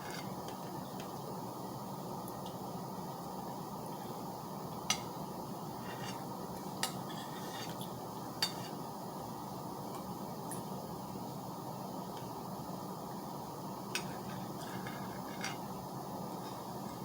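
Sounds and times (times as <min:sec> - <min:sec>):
cutlery clinking on a plate: 0:08.4 - 0:08.8.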